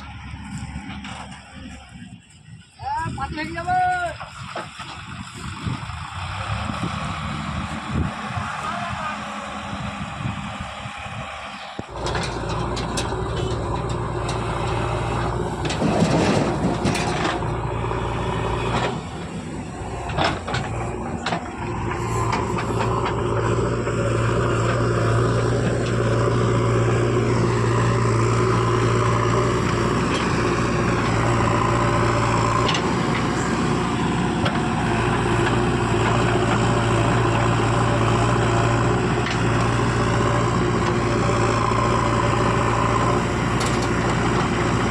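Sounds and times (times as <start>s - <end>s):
diesel machinery engine running: 0.0s - 44.9s
sharp knocks and clatter: 11.9s - 17.6s, 27.8s - 33.7s.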